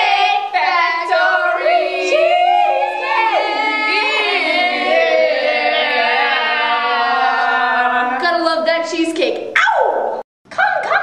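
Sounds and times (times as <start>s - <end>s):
girls singing: 0.0s - 9.1s.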